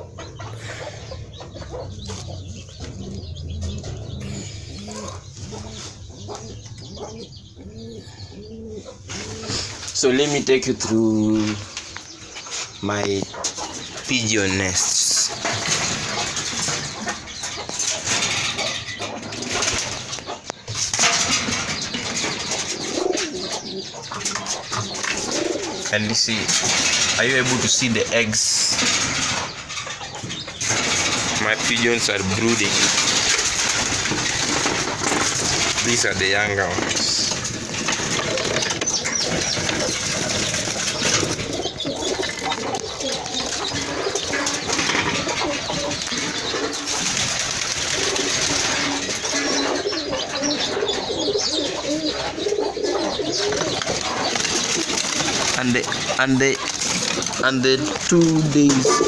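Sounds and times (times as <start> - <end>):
birds shuffling: 0.0 - 59.0
pigeons cooing: 0.0 - 59.0
rough handling noise: 9.1 - 49.6
wing flapping: 13.5 - 50.8, 52.8 - 59.0.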